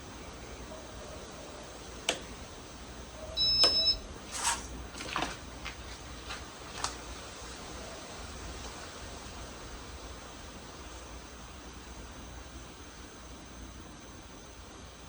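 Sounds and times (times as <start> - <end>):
ceiling fan humming: 0.0 - 15.0
high two-tone beep: 3.4 - 4.0.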